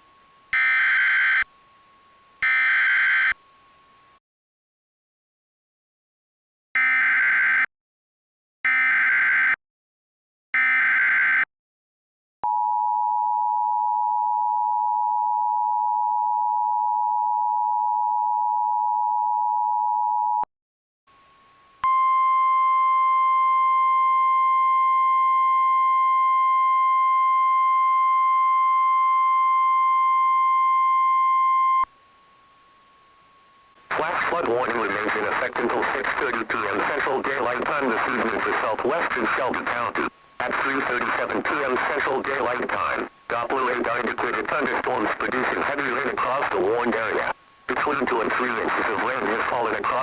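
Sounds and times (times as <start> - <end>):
steady warning alarm tone: 0.0 - 4.2, 10.6 - 11.5, 21.1 - 50.0
digital header data burst: 33.9 - 50.0.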